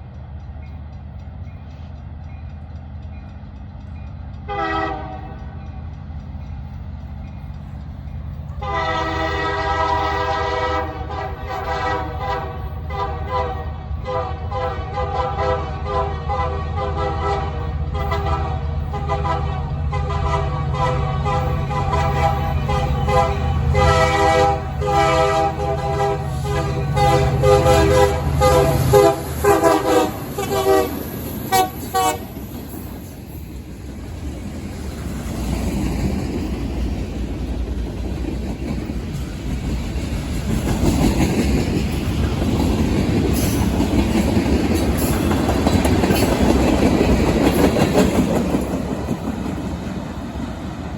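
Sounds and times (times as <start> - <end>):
locomotive engine rumble: 0.0 - 50.9
train wheels rolling: 0.0 - 50.9
locomotive air horn: 4.5 - 5.4, 8.6 - 32.3.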